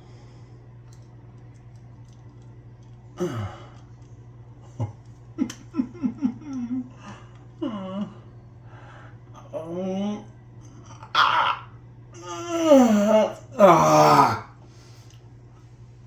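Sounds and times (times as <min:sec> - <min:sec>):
man groaning and grunting: 0:11.2 - 0:14.5.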